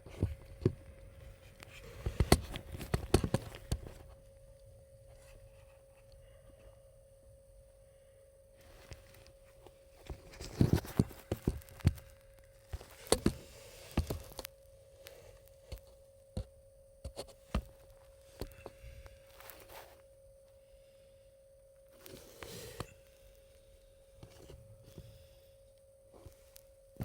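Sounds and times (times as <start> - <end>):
faint steady tone: 0.0 - 27.0.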